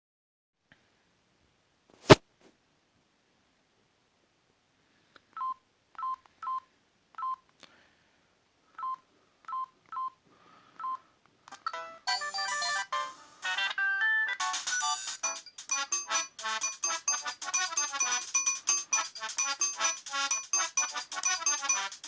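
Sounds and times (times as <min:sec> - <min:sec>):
phone keypad beeps: 0:07.2 - 0:07.4
phone ringtone playing: 0:11.7 - 0:22.0.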